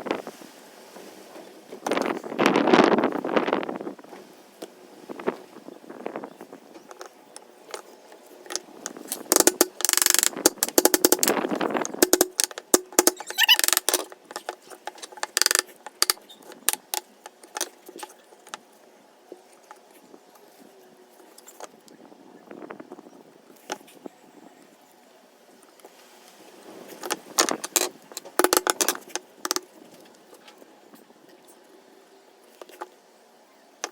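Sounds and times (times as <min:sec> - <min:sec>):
clattering and sharp clicks: 0:08.5 - 0:18.6.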